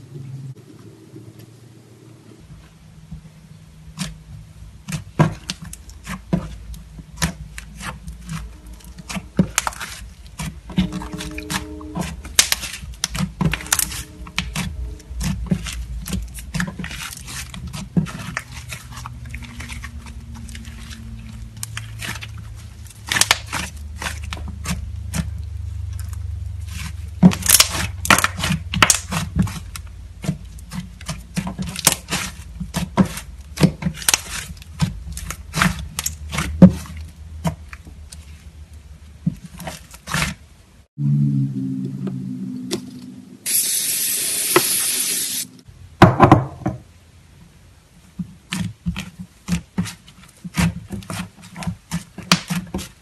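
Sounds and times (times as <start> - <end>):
low steady hum: 0.0 - 43.6
slime squishing by hand: 3.8 - 40.6, 48.0 - 53.0.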